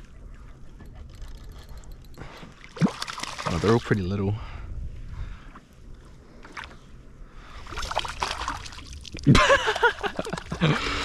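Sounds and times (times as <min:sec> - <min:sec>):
water splashing beside a kayak: 0:02.4 - 0:04.2, 0:07.5 - 0:11.0.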